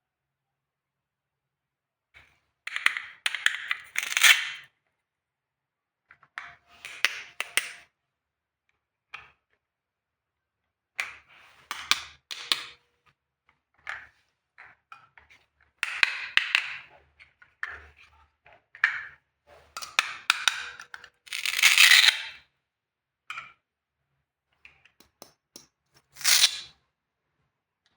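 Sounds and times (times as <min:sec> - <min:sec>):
plastic toy pieces clicking: 0:02.7 - 0:04.6, 0:21.3 - 0:22.3, 0:26.2 - 0:26.7.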